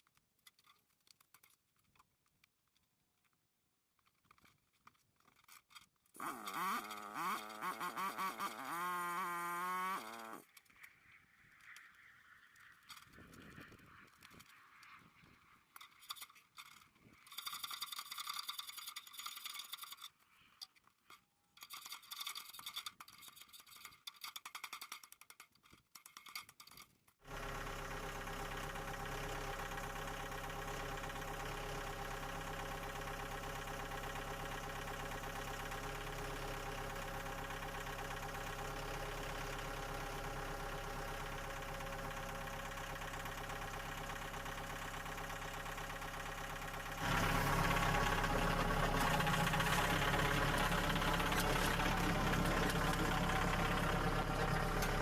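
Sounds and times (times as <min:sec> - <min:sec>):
motor running steadily: 0:06.2 - 0:10.4, 0:27.3 - 0:55.0.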